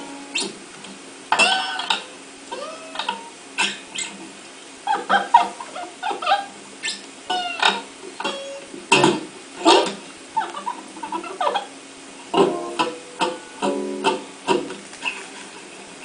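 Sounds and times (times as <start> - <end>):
plucked string instrument notes: 12.3 - 14.7.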